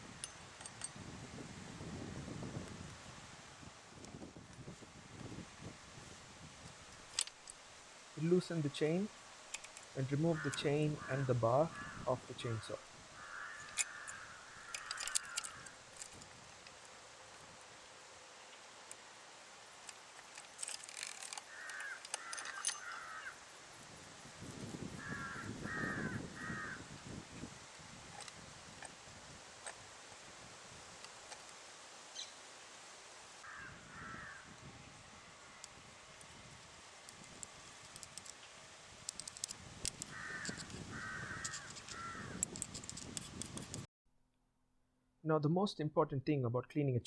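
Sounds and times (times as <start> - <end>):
chainsaw chain clicking: 6.9 - 7.6, 9.5 - 10.9, 13.5 - 16.9, 19.8 - 23.2, 39.1 - 40.7
crow cawing: 10.3 - 15.8, 21.5 - 23.4, 25.0 - 26.9, 33.4 - 34.5, 40.1 - 42.4
light clicks: 13.6 - 16.9.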